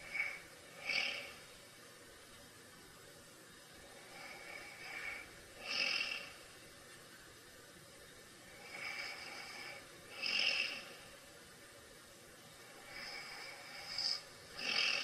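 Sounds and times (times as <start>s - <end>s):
person snoring: 0.0s - 1.5s, 4.0s - 6.4s, 8.5s - 11.1s, 12.7s - 15.0s.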